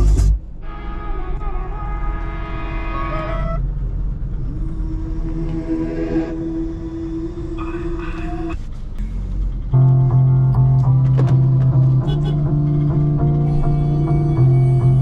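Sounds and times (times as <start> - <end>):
plucked guitar: 9.0 - 15.0
repeating bass pattern: 9.0 - 15.0.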